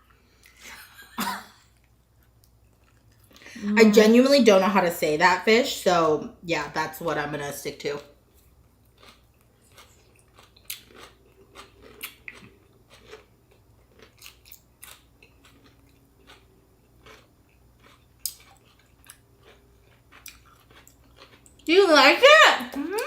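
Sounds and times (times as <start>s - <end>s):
chewing crunches: 1.7s - 3.5s, 8.3s - 21.7s.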